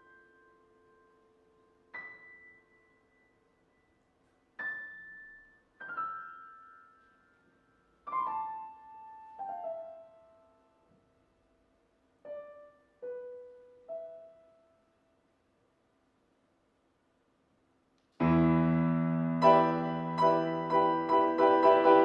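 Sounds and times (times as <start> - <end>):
piano chords and notes: 0.0 - 3.7, 4.5 - 11.1, 12.2 - 15.0, 18.2 - 22.0.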